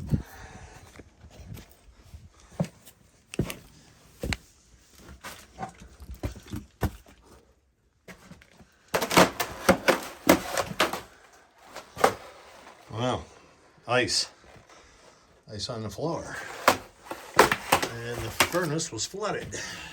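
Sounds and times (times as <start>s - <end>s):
thumps and knocks: 9.0s - 11.1s, 16.5s - 18.8s
footsteps: 16.4s - 19.7s.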